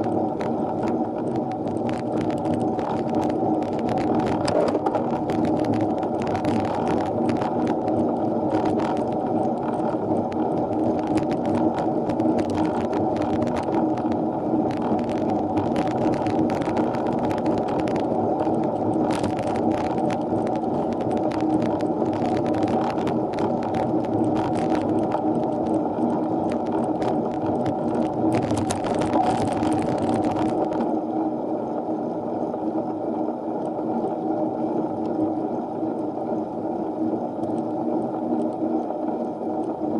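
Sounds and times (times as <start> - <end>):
bicycle clicks and rattles: 0.0 - 30.9
muffled riding rumble: 0.0 - 31.3.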